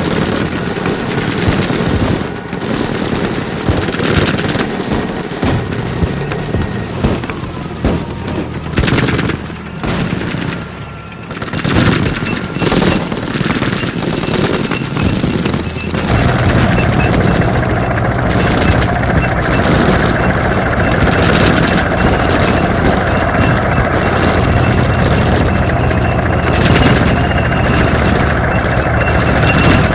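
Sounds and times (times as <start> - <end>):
machine-gun bursts and shots: 0.0 - 29.9
low rumble: 15.1 - 29.9.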